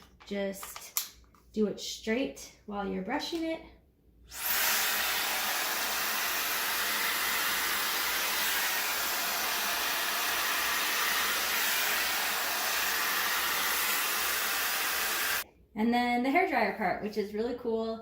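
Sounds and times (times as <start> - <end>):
hair dryer brush blowing air: 4.3 - 15.4.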